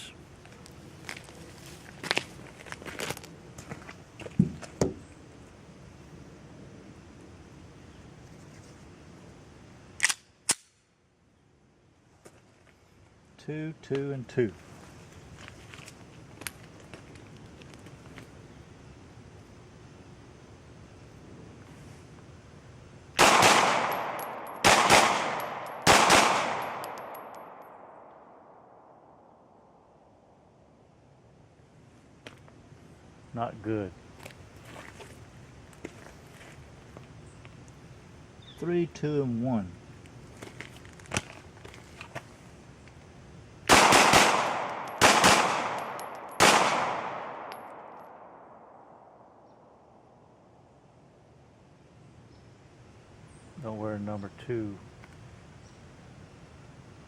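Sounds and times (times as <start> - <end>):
pistol shots echoing: 23.2 - 28.0, 43.7 - 48.4.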